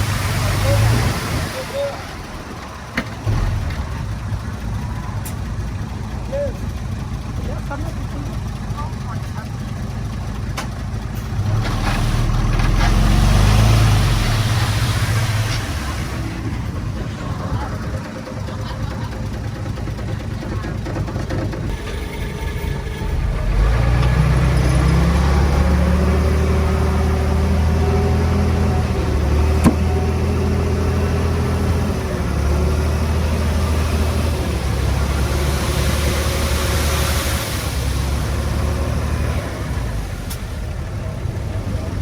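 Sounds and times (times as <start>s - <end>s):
diesel engine of heavy equipment: 0.0s - 42.0s.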